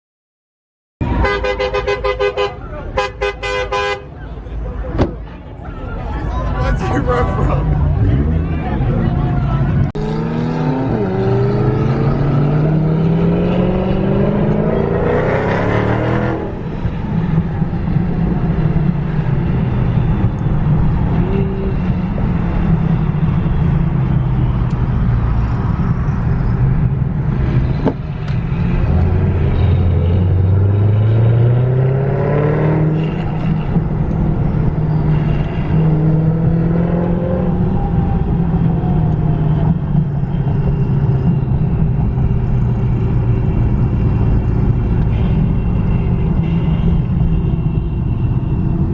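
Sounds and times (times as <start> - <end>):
low engine rumble: 4.0 - 11.2
car engines accelerating: 4.0 - 48.9.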